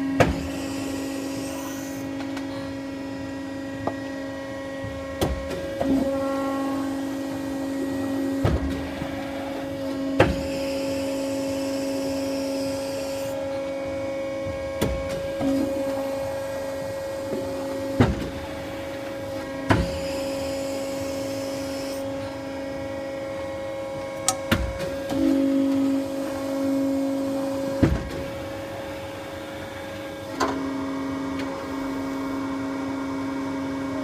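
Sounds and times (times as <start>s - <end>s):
machine humming: 0.0s - 34.0s.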